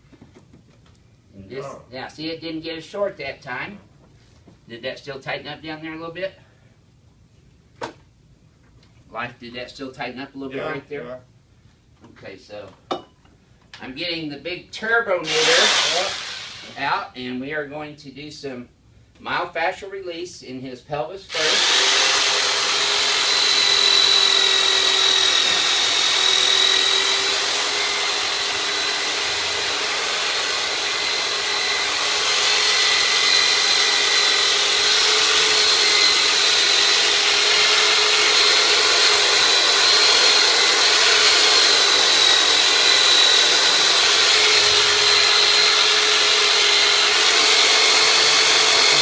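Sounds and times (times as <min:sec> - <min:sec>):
electric massager motor whine: 0:15.4 - 0:16.8, 0:21.6 - 0:49.0.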